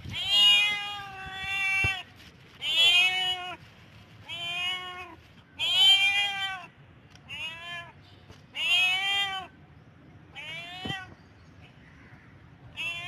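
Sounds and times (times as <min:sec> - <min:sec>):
cat meowing: 0:00.1 - 0:03.6, 0:04.2 - 0:06.7, 0:07.3 - 0:07.9, 0:08.5 - 0:09.5, 0:10.3 - 0:11.2, 0:12.7 - 0:13.0.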